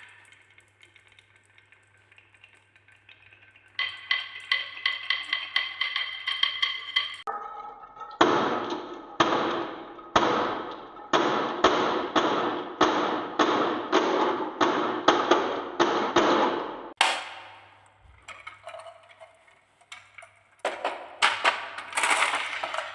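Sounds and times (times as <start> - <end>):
marbles rolling on wooden track: 0.0 - 7.3, 19.9 - 22.9.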